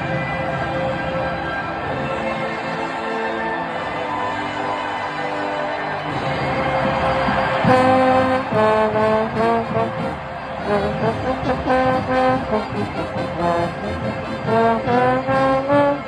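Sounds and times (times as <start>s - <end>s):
marching band playing: 6.1s - 16.0s.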